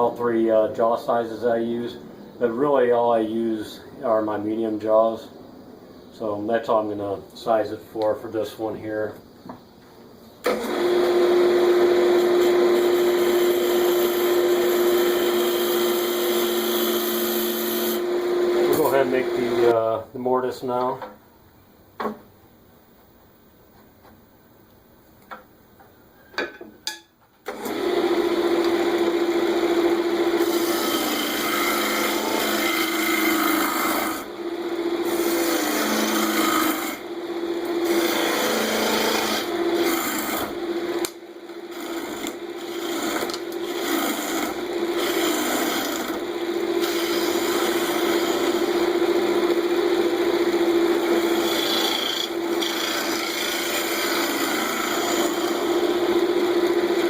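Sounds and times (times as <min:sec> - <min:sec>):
wood lathe humming: 0:10.5 - 0:19.7, 0:27.5 - 0:57.0.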